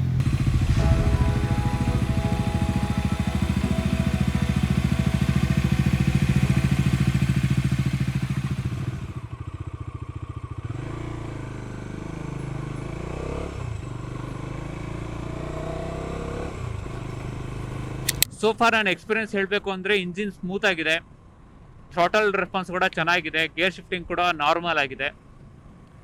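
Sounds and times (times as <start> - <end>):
motorcycle engine running: 0.0 - 18.1.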